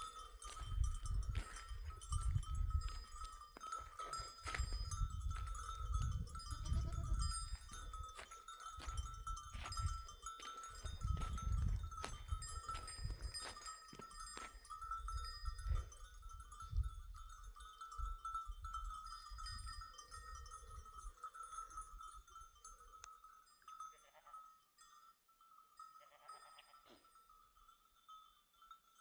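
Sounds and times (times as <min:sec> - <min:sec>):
sheep and goats bleating: 0:05.4 - 0:08.2, 0:23.8 - 0:24.5, 0:25.8 - 0:27.1.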